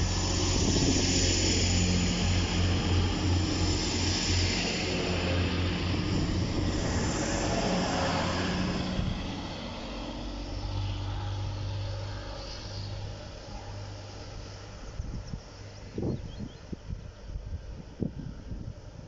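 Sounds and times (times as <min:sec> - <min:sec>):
diesel train engine throbbing: 0:00.0 - 0:15.6.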